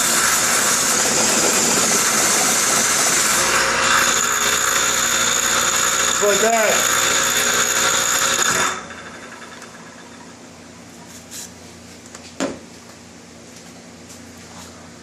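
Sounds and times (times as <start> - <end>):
power tool spinning down: 0.0 - 10.4.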